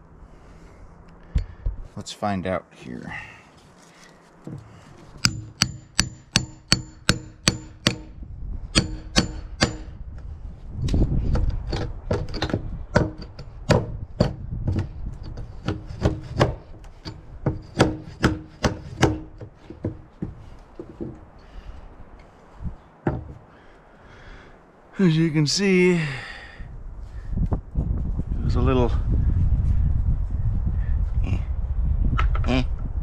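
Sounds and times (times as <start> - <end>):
scraping and prying: 3.6 - 8.1, 10.8 - 21.3
hand tool striking a log: 4.5 - 8.1, 8.7 - 9.9, 11.4 - 21.2.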